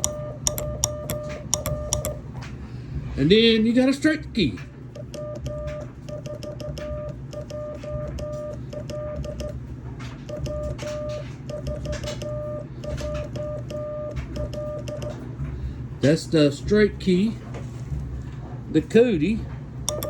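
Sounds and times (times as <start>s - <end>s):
morse code beeping: 0.0s - 2.2s, 5.0s - 9.6s, 10.3s - 15.2s
telegraph key clicking: 0.0s - 2.2s, 5.0s - 9.6s, 10.2s - 15.2s.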